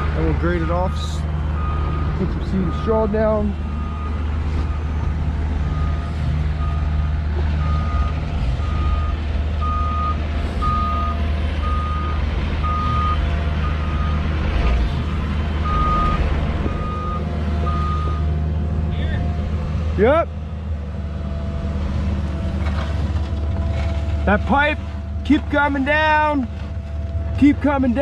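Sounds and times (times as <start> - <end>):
diesel engine drone: 0.0 - 28.0.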